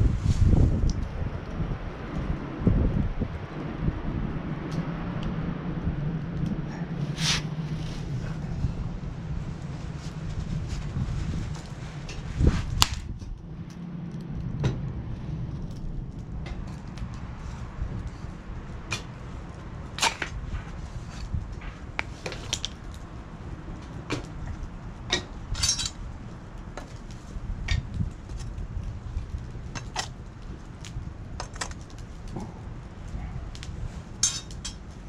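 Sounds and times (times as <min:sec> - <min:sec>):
steady low rumble: 0:00.0 - 0:35.0
metal parts clinking: 0:25.6 - 0:26.0, 0:34.2 - 0:34.8.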